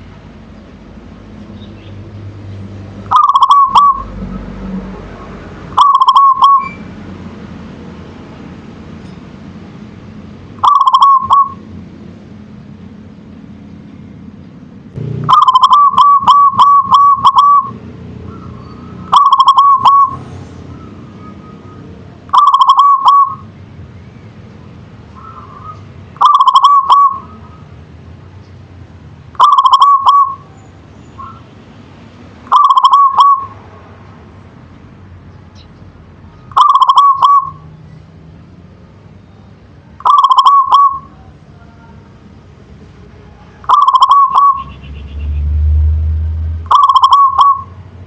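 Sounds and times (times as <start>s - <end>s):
dove cooing: 3.1s - 4.1s, 5.8s - 6.8s, 10.6s - 11.6s, 15.3s - 17.8s, 19.1s - 20.2s, 22.3s - 23.5s, 25.2s - 27.6s, 29.4s - 30.5s, 32.5s - 33.6s, 36.5s - 37.7s, 40.0s - 41.3s, 43.6s - 44.8s, 46.7s - 47.7s.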